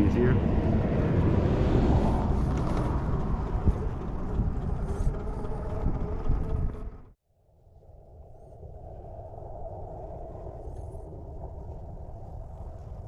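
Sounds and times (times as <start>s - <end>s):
heavy rumble: 0.0s - 7.2s.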